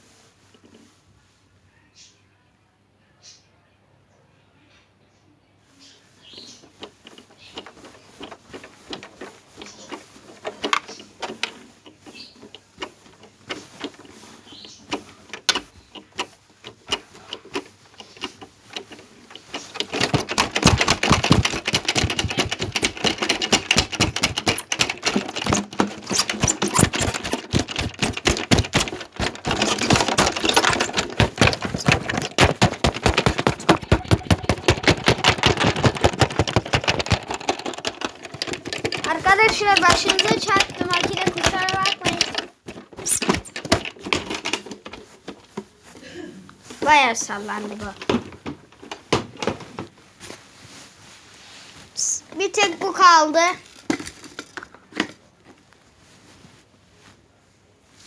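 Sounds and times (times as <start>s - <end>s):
washing machine spin rattling: 6.6s - 45.2s, 46.8s - 49.9s.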